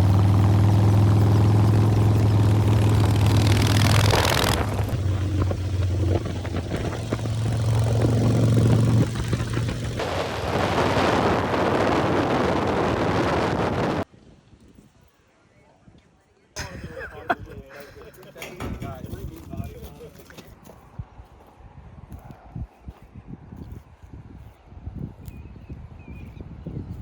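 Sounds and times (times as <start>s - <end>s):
motorcycle engines running: 0.0s - 14.0s
rushing engine and air noise: 0.0s - 14.1s.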